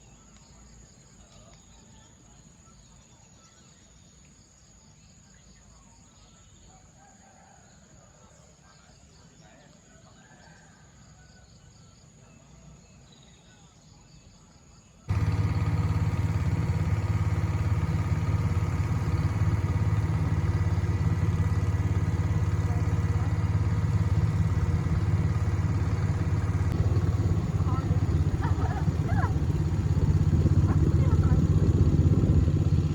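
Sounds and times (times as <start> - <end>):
engine running: 15.1 - 32.9.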